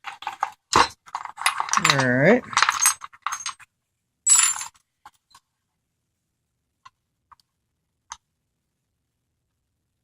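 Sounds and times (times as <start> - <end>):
metal parts clattering: 0.0 - 3.7, 4.3 - 4.8.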